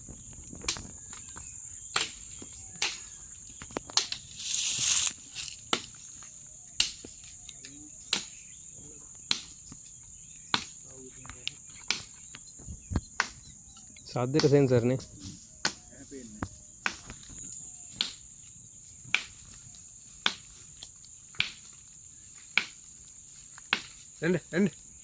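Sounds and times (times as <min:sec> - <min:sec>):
insects droning: 0:00.0 - 0:25.0
short hissing rush: 0:04.3 - 0:05.6.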